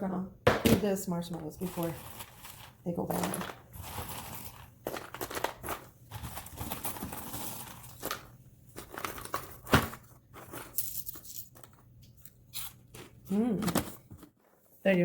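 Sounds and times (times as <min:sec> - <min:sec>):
rustling of plastic container: 0:01.4 - 0:10.9.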